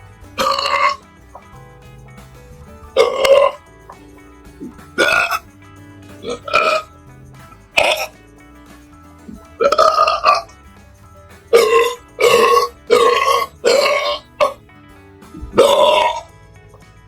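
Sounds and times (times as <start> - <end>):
quiet background music: 0.0 - 17.0
person burping loudly: 0.4 - 1.0, 3.0 - 3.6, 5.0 - 5.4, 6.2 - 6.9, 7.8 - 8.2, 9.6 - 10.5, 11.5 - 14.6, 15.4 - 16.3.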